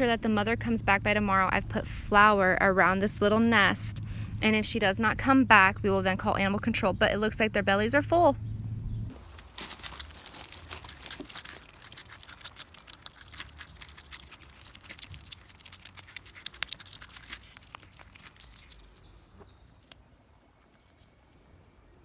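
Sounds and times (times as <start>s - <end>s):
dry rustling and crinkling: 9.1s - 21.2s.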